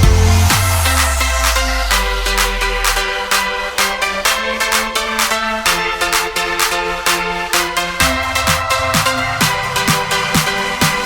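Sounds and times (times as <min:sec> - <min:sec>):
deep bass line: 0:00.0 - 0:03.2
electronic dance beat: 0:00.0 - 0:11.0.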